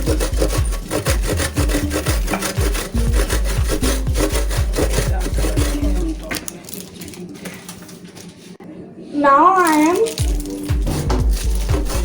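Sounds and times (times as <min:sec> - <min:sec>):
cheese grating on hand grater: 0:00.0 - 0:06.3, 0:10.0 - 0:12.0.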